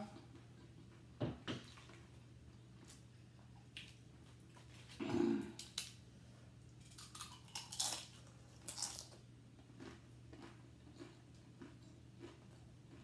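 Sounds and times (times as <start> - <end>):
chewing: 6.8 - 13.0
crunching tortilla chips: 6.8 - 13.0.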